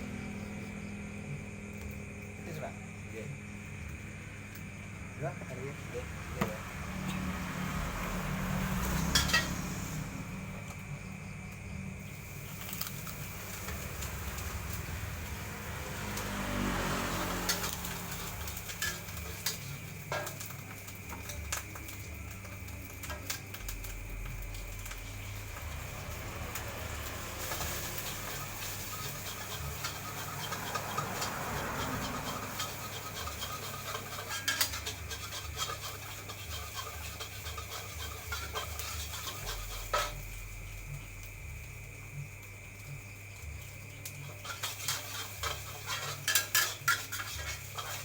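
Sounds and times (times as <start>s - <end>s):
metal spatula scraping wok: 5.8s - 10.7s, 12.0s - 21.9s, 24.5s - 40.4s, 44.1s - 48.0s.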